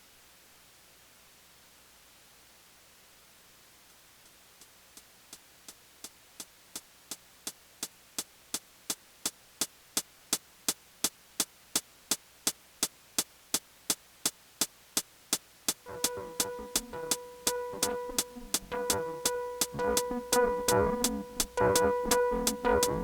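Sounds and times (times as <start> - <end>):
drum machine ticks: 14.2 - 23.0.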